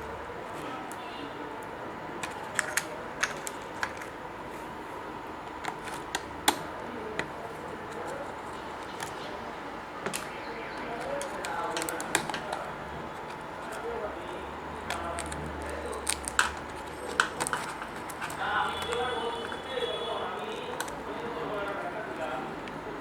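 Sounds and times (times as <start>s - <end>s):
clicks of plastic parts and tools: 2.2s - 4.1s.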